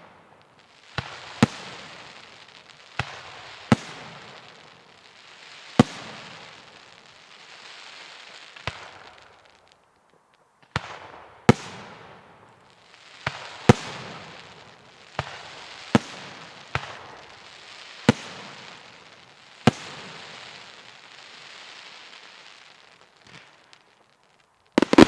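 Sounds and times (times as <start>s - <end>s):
firework bangs: 0.0s - 7.9s, 10.7s - 22.4s, 24.8s - 25.0s
firework crackling hiss: 0.0s - 25.0s.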